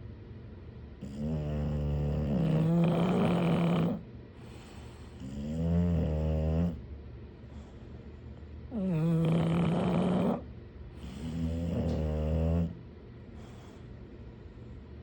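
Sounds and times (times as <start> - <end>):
dog snoring: 1.0 - 6.9, 8.7 - 13.8.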